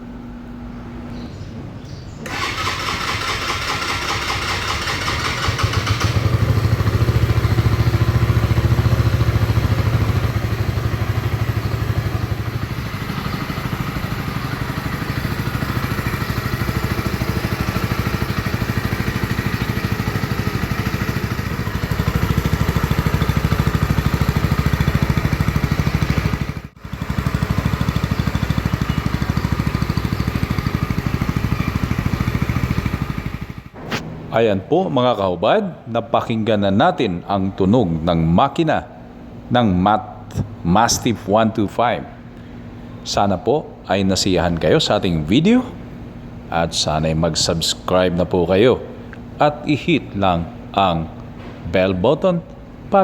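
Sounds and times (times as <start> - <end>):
motorcycle engine running: 2.3 - 34.0.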